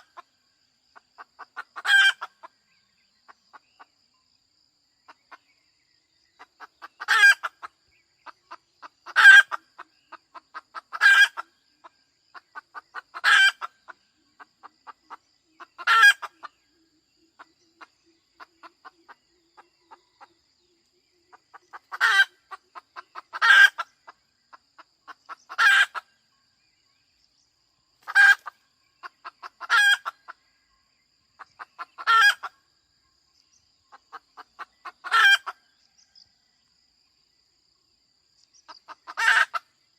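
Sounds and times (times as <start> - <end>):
hen cackling: 1.2 - 2.5, 6.4 - 11.6, 12.3 - 16.5, 21.3 - 26.1, 28.0 - 30.4, 31.4 - 32.6, 33.9 - 35.7, 38.7 - 39.7.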